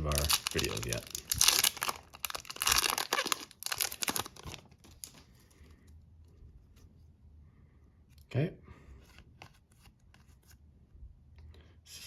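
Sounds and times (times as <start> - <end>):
card pack wrapper crinkling: 0.0 - 5.3.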